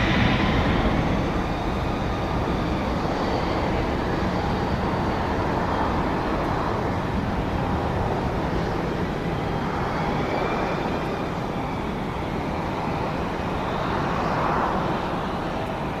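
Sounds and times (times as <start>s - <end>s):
faint high whining tones: 0.0s - 16.0s
jet engines roaring: 0.0s - 16.0s.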